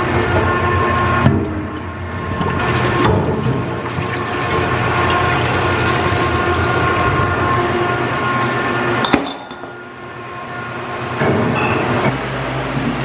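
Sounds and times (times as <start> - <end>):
hum of processing equipment: 0.0 - 13.0
glass bottles clinking: 9.0 - 9.9.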